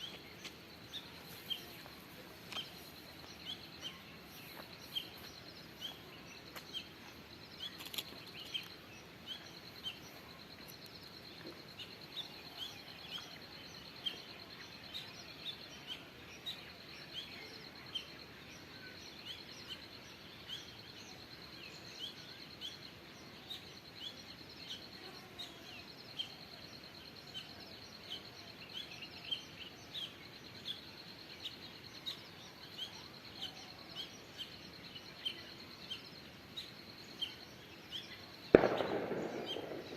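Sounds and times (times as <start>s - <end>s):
low background hiss: 0.0s - 39.9s
bird chirps: 27.3s - 39.9s.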